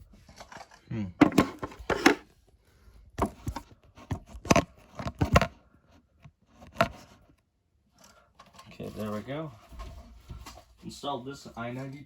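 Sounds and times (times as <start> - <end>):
plastic scraping: 0.2 - 2.3, 3.2 - 7.3
plastic knocks and clicks: 1.2 - 2.2, 3.2 - 5.6.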